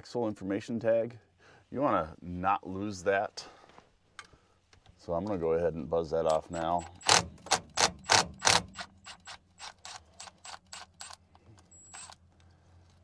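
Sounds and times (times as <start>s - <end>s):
ratchet wrench clicking: 6.3s - 12.2s.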